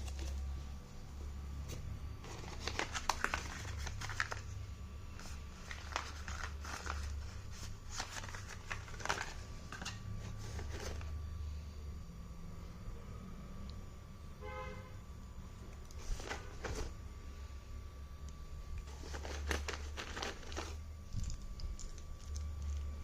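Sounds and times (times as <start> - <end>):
steady low hum: 0.0 - 23.0
packaging crinkling and clicking: 2.2 - 4.6, 5.2 - 11.2, 18.7 - 22.9.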